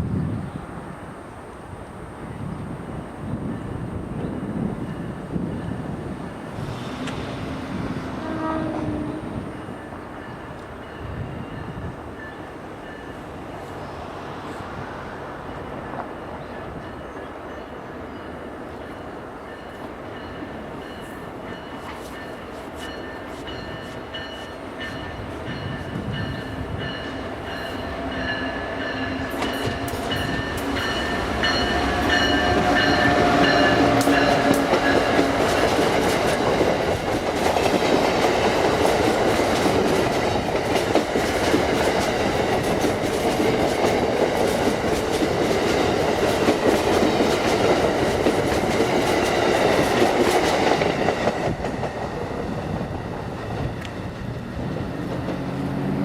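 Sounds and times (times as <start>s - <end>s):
train rumble: 0.0s - 56.0s
train horn: 6.6s - 10.4s, 25.9s - 35.9s
locomotive electronic bell ringing: 16.8s - 35.7s.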